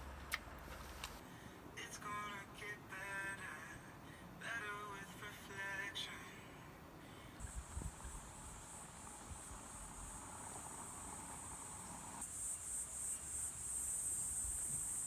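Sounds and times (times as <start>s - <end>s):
insects chirring: 7.4s - 15.0s.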